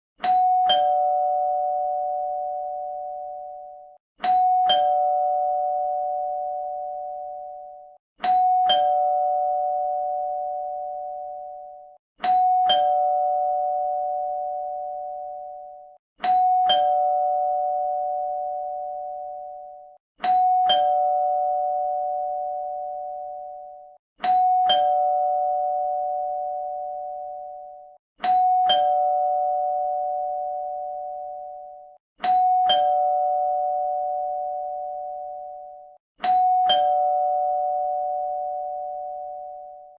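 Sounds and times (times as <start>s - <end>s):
two-tone doorbell chime: 0.2s - 40.0s.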